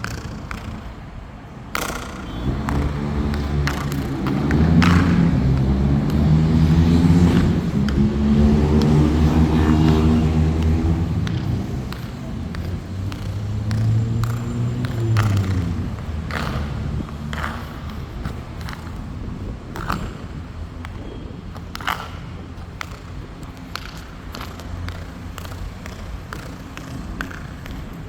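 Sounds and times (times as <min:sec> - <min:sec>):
vehicle engine running: 0:01.8 - 0:20.8.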